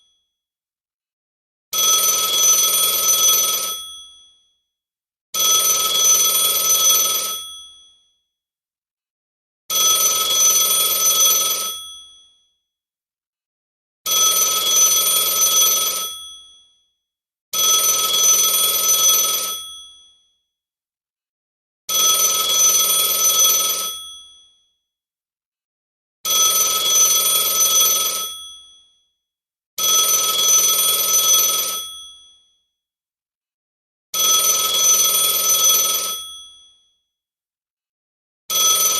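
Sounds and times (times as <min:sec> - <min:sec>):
telephone ringing: 0:02.0 - 0:03.8, 0:22.3 - 0:24.0, 0:34.4 - 0:36.3.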